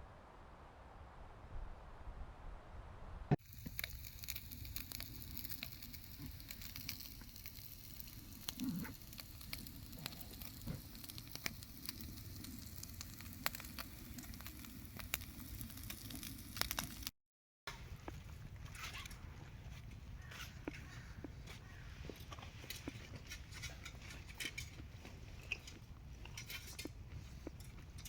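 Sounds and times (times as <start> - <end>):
campfire crackling and popping: 3.3 - 17.1, 19.8 - 28.0.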